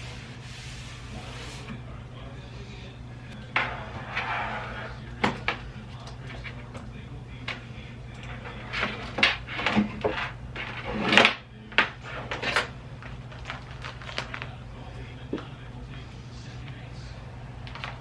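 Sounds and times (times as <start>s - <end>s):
steady low hum: 0.0s - 18.0s
objects knocking and clattering: 8.2s - 14.6s
rustling: 12.0s - 14.9s.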